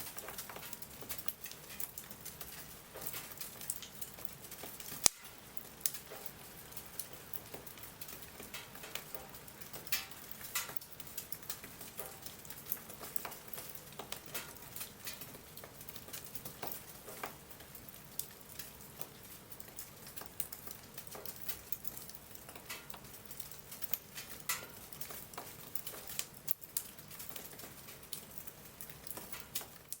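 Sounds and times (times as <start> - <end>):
sharp pops and snaps: 0.0 - 30.0
wood bonfire crackling: 0.0 - 30.0.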